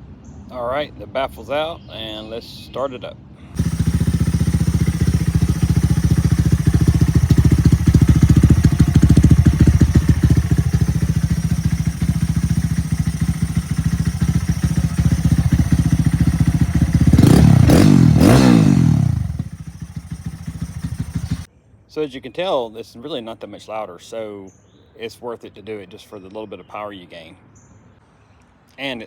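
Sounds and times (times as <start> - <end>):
motorcycle engine idling and revving: 3.6 - 21.5.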